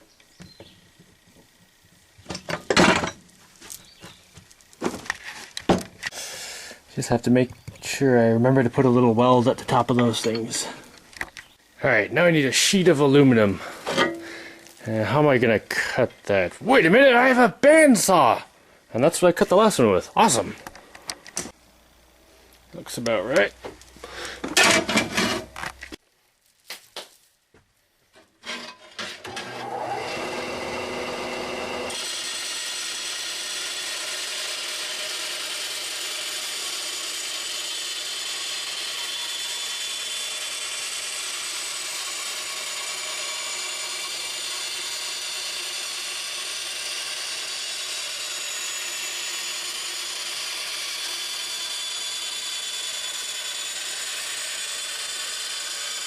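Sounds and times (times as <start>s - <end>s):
bandsaw cutting aluminum: 23.3s - 25.6s, 28.4s - 56.0s.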